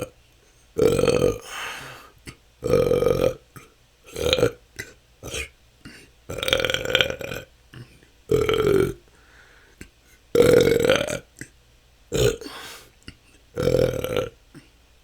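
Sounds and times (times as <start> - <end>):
person burping: 0.8 - 1.7, 2.3 - 9.0, 10.4 - 11.5, 12.1 - 14.7.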